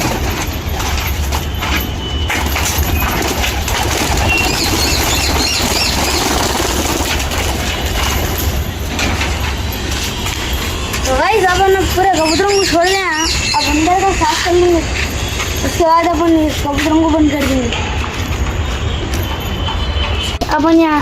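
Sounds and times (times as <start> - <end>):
pigeons wings flapping: 0.0 - 9.6
bird chirps: 4.1 - 6.7, 12.0 - 14.6.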